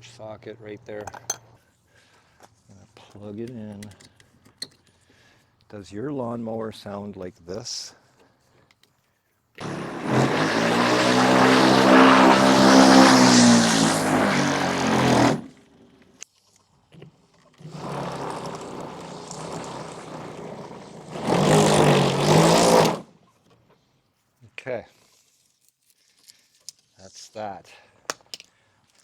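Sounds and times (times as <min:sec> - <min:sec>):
electric lawn mower motor whine: 0:09.6 - 0:16.0, 0:17.6 - 0:23.1.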